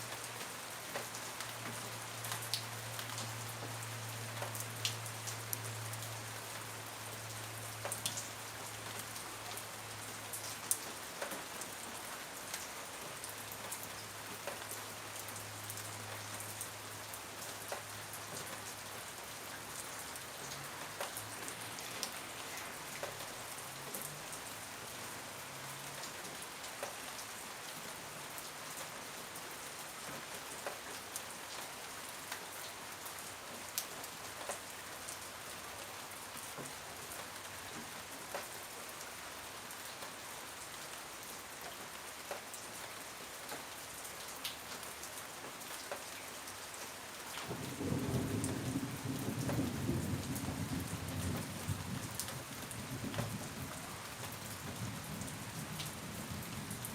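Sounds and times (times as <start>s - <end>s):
steady rain falling: 0.0s - 56.9s
low rumble of thunder: 47.5s - 56.9s.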